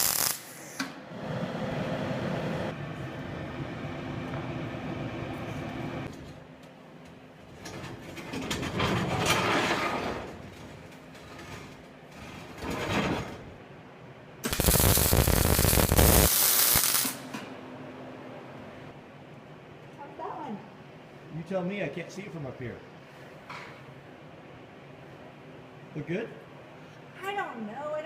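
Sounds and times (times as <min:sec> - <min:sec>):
welding arc crackling: 0:00.0 - 0:00.8, 0:14.4 - 0:17.3.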